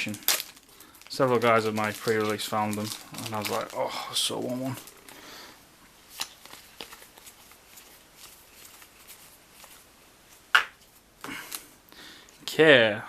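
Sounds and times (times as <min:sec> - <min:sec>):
wrapper crinkling: 0:00.0 - 0:11.7
cards clicking and rustling: 0:06.1 - 0:09.8.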